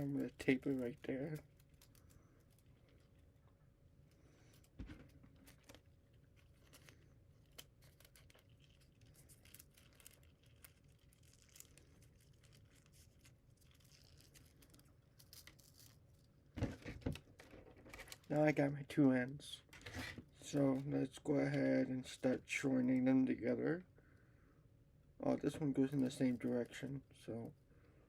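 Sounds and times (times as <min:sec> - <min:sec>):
adhesive tape rustling and tearing: 0:00.0 - 0:03.3, 0:05.4 - 0:16.3.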